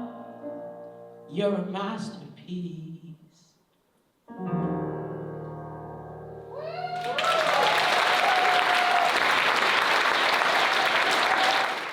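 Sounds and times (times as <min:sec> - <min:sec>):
cheering whoops: 0:06.6 - 0:11.9
audience applause: 0:07.0 - 0:11.9.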